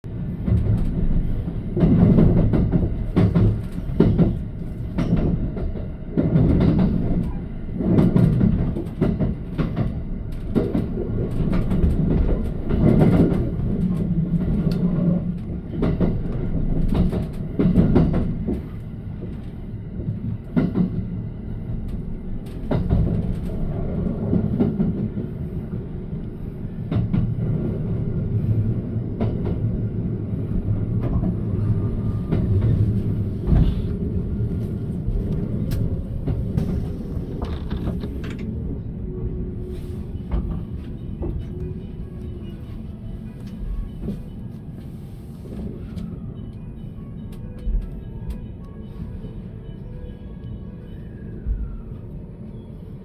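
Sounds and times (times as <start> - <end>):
train low rumble: 0.0 - 53.0
train wheels clacking over joints: 0.5 - 21.0, 21.8 - 25.1, 32.1 - 38.7.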